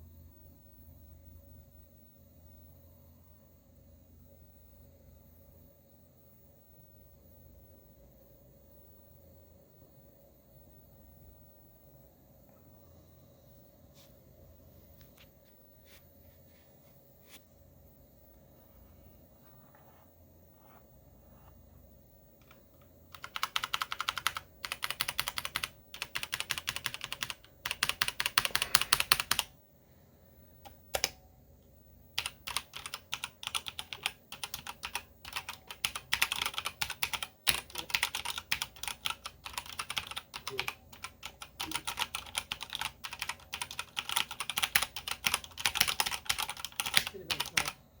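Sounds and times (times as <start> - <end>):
mechanical keyboard typing: 22.4 - 29.5, 30.7 - 31.2, 32.2 - 47.8.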